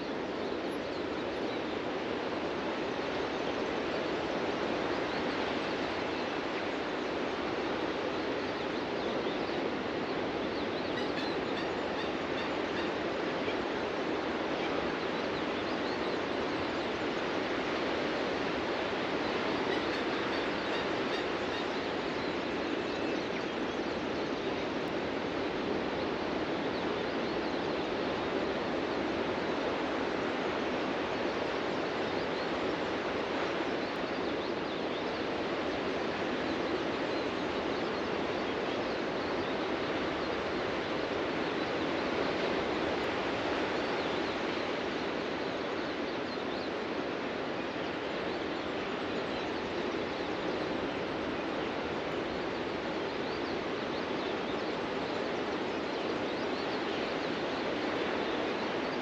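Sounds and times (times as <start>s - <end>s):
ocean surf washing on beach: 0.0s - 59.0s
faint bird chirps: 10.4s - 13.6s.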